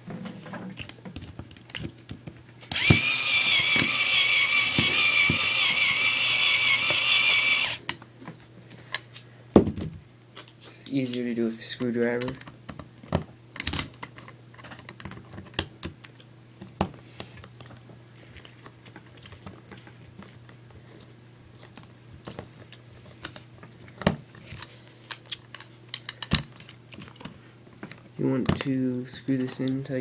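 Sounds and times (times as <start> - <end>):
screwdriver turning a screw: 2.7 - 7.8
metal and plastic parts handled: 23.2 - 28.7.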